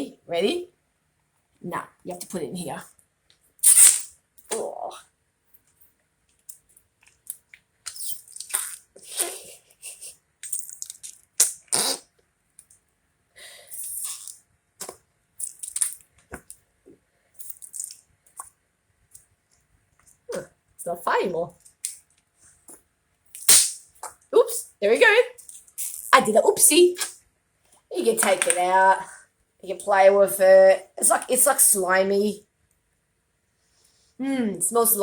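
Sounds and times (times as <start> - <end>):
noise putty squelching fart noises: 3.6 - 4.2, 7.8 - 9.6, 10.4 - 12.2, 25.8 - 26.3.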